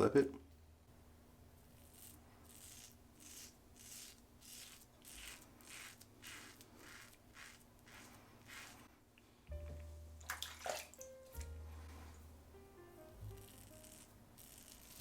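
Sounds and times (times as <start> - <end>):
razor scraping stubble: 1.6 - 8.9, 13.2 - 15.0.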